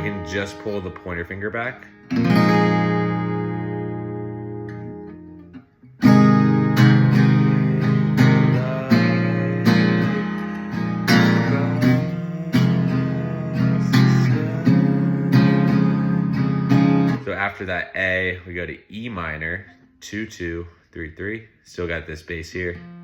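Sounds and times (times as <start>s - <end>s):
acoustic guitar strumming: 0.0s - 17.4s.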